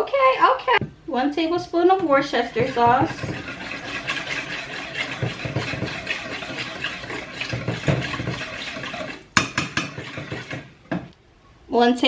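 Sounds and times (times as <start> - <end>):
sauce bubbling in a pan: 2.1 - 11.0.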